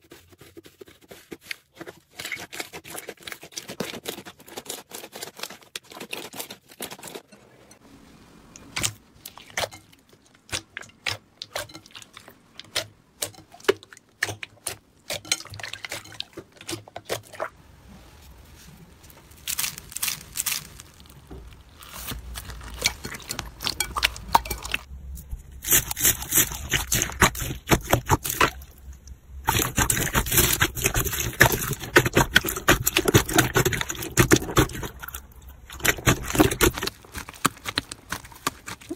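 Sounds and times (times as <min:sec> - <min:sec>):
slime crackling and crunching: 0:18.5 - 0:24.9, 0:25.5 - 0:28.8, 0:29.4 - 0:38.9.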